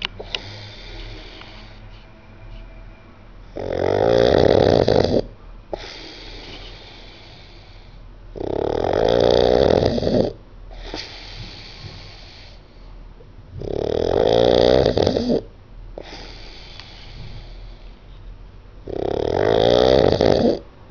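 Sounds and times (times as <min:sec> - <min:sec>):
person snoring: 0:00.2 - 0:01.8, 0:03.5 - 0:12.6, 0:13.6 - 0:17.6, 0:18.9 - 0:20.7
soft breathy breath: 0:00.2 - 0:02.8, 0:05.7 - 0:08.2, 0:10.7 - 0:13.1, 0:16.0 - 0:18.4.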